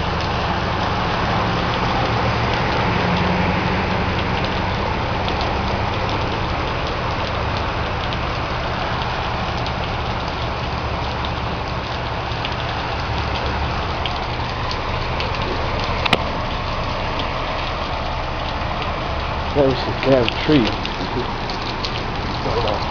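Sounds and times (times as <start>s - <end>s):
raindrop ticks: 0.0s - 22.9s
steady rain falling: 0.0s - 22.9s
vehicle engine humming: 0.0s - 22.9s.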